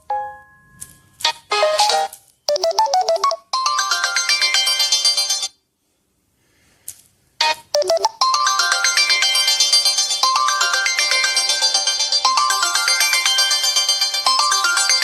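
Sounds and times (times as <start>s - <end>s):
phone ringtone chimes: 1.5s - 5.5s, 7.8s - 15.0s.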